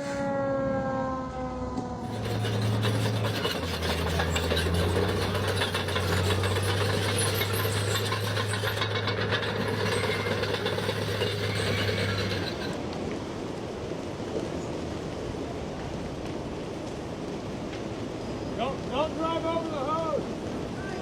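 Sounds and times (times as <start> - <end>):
heavy diesel engine under load: 1.7 - 12.9
dense rattling crackle: 2.0 - 12.8.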